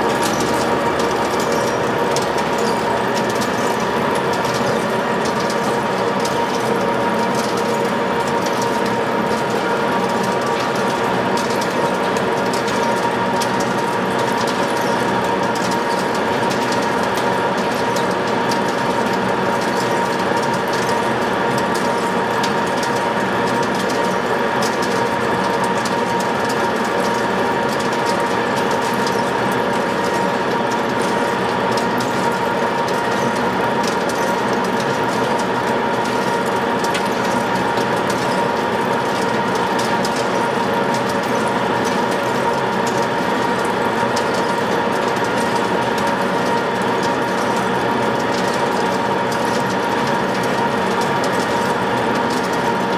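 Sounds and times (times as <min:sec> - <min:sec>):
lathe gear whine with rattle: 0:00.0 - 0:52.9.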